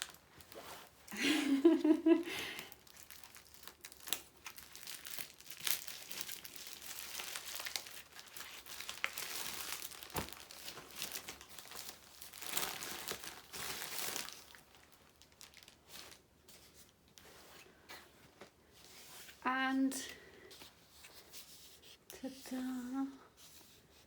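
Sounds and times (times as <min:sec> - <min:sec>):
mailing bag crinkling and tearing: 0:00.0 - 0:00.9, 0:02.6 - 0:16.3.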